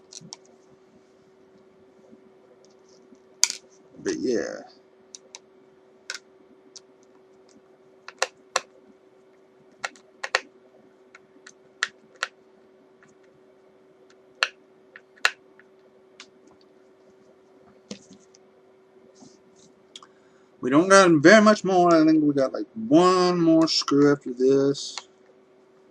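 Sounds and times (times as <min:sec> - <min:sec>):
faint steady hum: 0:00.0 - 0:25.9.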